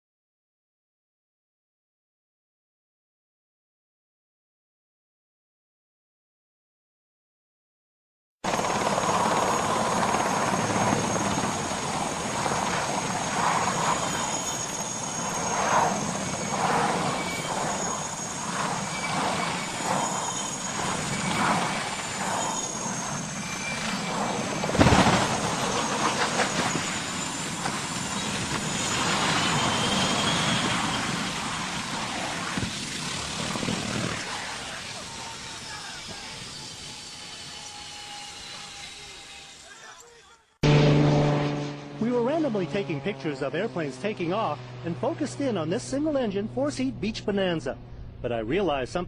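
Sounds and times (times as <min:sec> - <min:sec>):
aircraft engine whine and rush: 0:08.5 - 0:39.8, 0:40.6 - 0:48.3
loud bang: 0:24.7 - 0:25.8.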